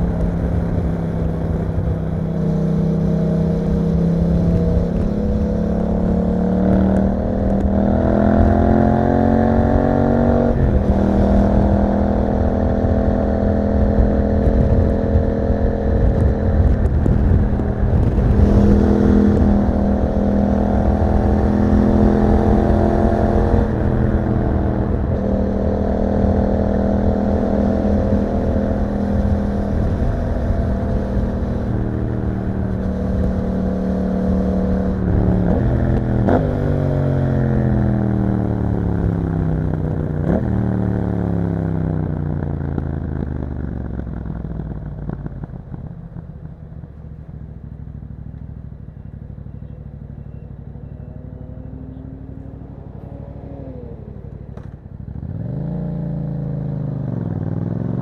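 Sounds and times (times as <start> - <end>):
motorcycle engine accelerating: 0.0 - 58.0
wind rushing: 9.5 - 38.2.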